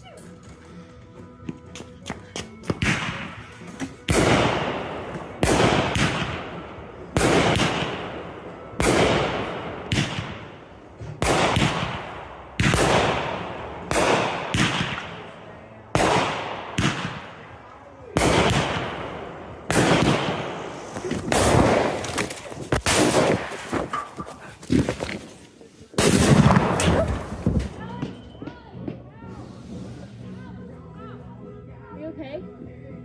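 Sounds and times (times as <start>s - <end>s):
fireworks bangs with crackle: 2.7s - 6.5s, 7.2s - 8.1s, 11.1s - 15.0s, 18.2s - 24.0s, 26.0s - 28.2s.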